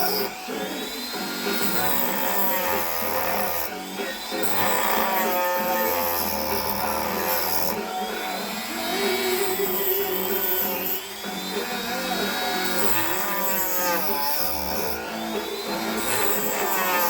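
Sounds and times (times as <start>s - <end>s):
rotary tool motor whine: 0.0s - 17.0s.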